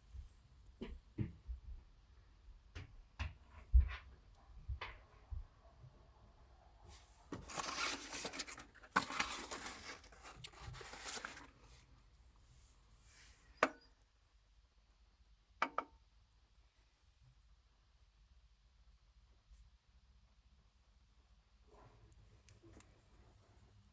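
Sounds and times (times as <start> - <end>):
rustling and scraping: 6.9 - 11.9.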